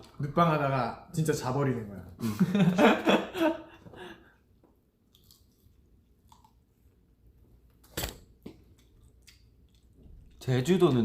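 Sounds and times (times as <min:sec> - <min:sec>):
person chewing: 0:05.0 - 0:07.0, 0:08.3 - 0:10.4.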